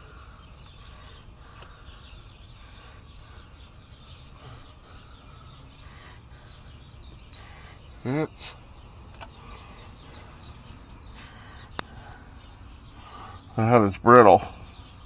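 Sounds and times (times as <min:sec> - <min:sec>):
birds chirping: 0:00.0 - 0:15.0
low steady ambient noise: 0:00.0 - 0:15.0.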